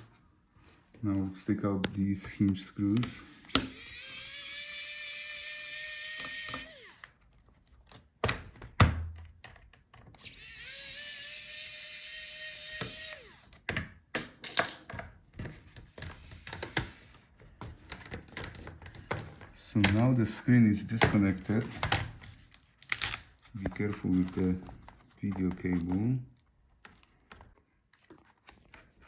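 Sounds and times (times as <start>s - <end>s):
electric screwdriver motor whine: 3.5s - 7.1s, 10.2s - 13.5s.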